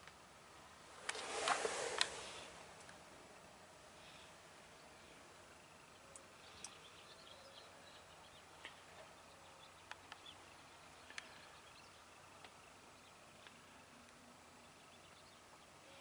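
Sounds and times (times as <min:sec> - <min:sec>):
faint bird chirps: 0:04.0 - 0:16.0.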